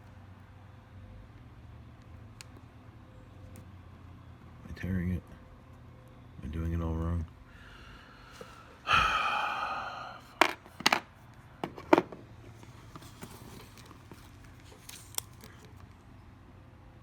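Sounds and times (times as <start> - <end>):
breathy sigh: 7.5 - 10.5.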